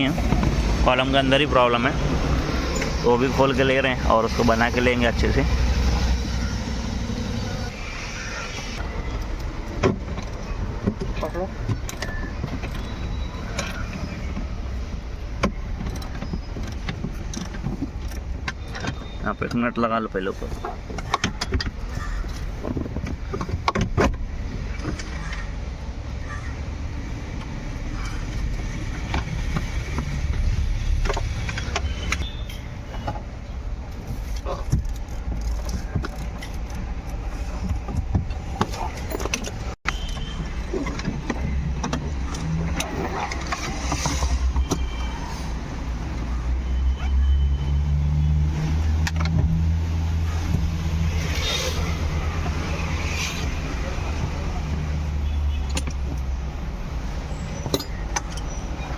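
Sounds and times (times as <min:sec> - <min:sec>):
metal tools clinking: 0:57.4 - 0:58.9.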